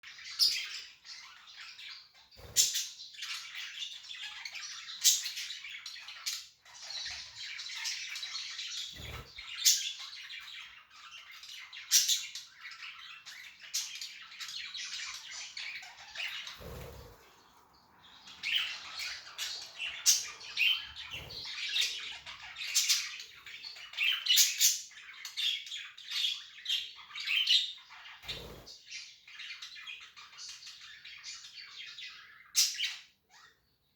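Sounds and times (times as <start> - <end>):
budgerigars chirping and warbling: 0.0 - 33.9
sharp loud bird calls: 11.7 - 29.0.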